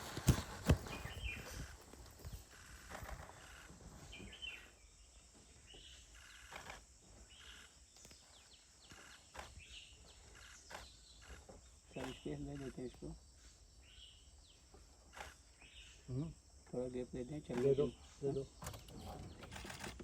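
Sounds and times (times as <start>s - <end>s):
bird chirps and calls: 0.6s - 2.6s, 3.3s - 16.1s.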